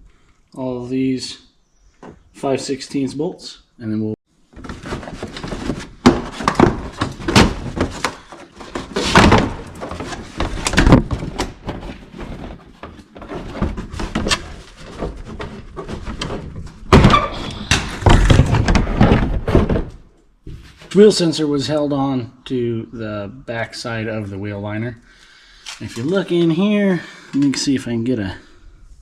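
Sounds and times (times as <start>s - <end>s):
plastic liner knocks and scraping: 4.5s - 20.9s.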